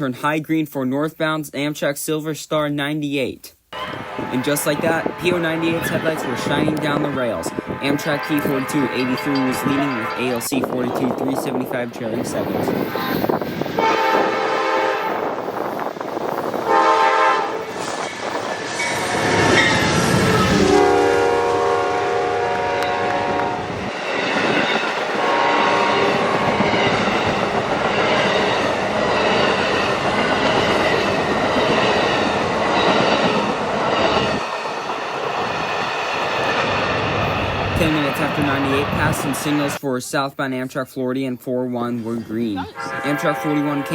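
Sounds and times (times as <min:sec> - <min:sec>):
train horn blasts: 0:03.8 - 0:10.5, 0:12.8 - 0:15.5, 0:16.6 - 0:18.0, 0:19.1 - 0:23.9, 0:25.0 - 0:27.3, 0:42.7 - 0:43.9
train wheels rolling and clattering: 0:17.7 - 0:20.8, 0:22.8 - 0:39.3.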